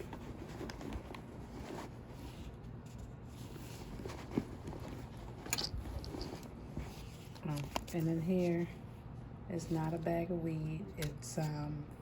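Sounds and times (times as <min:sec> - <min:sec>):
rustling items in handbag: 0:00.0 - 0:08.7.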